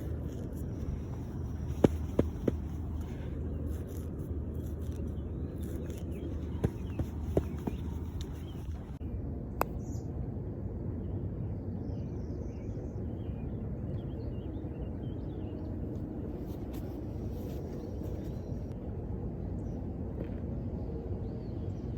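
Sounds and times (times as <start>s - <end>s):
small birds chirping: 0.0s - 9.0s
steady low rumble: 0.0s - 13.8s.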